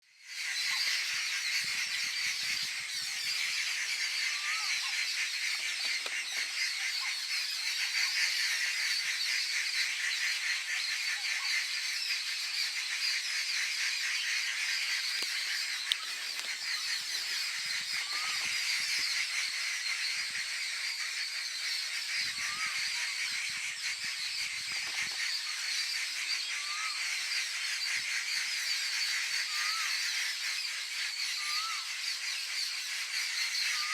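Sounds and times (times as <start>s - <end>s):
birds giving harsh alarm calls: 13.8s - 21.2s, 21.9s - 25.6s.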